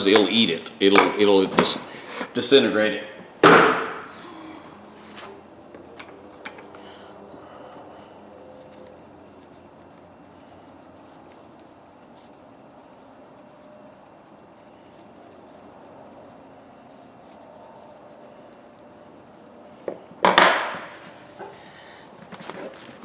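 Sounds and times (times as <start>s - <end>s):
faint rubbing and handling: 1.5s - 2.4s, 7.5s - 19.4s.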